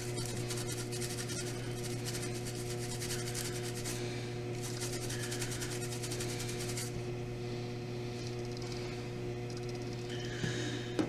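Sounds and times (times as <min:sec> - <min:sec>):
scrubbing on circuit board: 0:00.0 - 0:07.0
steady low hum: 0:00.0 - 0:11.0.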